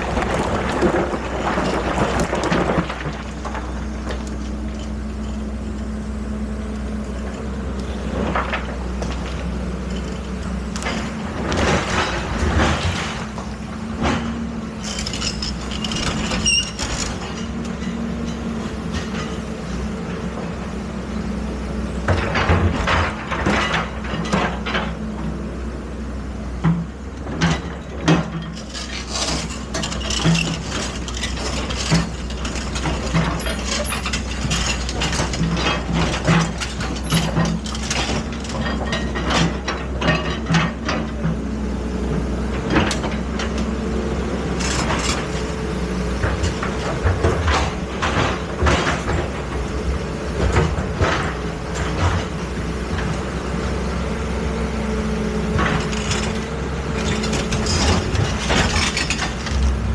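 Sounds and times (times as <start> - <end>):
excavator engine droning: 0.0 - 59.9
metal clanks and knocks: 26.6 - 41.4, 46.2 - 53.2, 55.5 - 59.9.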